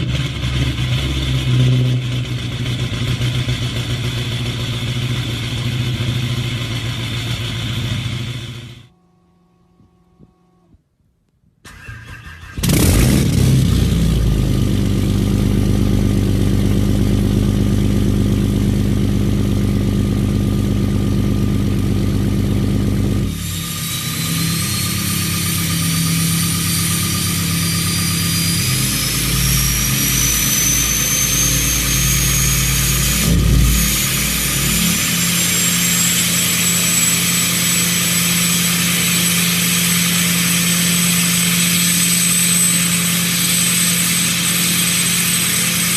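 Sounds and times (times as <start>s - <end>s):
diesel engine starting and idling: 0.0s - 9.0s, 11.6s - 45.9s
thin high whine: 23.3s - 45.9s.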